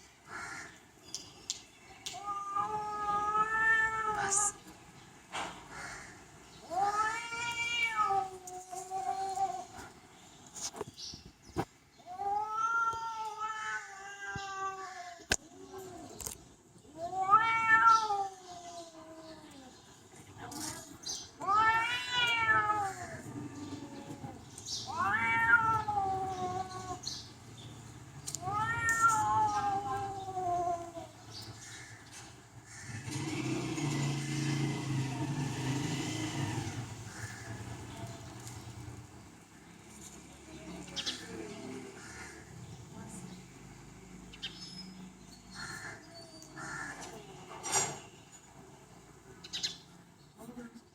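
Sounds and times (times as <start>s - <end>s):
cat yowling: 17.0s - 19.7s, 21.4s - 24.3s, 24.9s - 27.1s, 28.4s - 31.2s.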